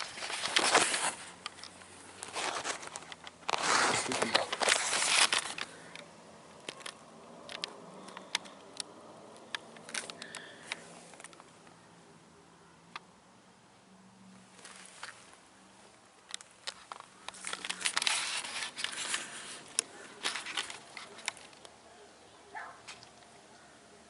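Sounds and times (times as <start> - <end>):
rustling and crinkling: 0.0 - 11.8, 14.4 - 23.7
sharp clicks: 5.2 - 11.8.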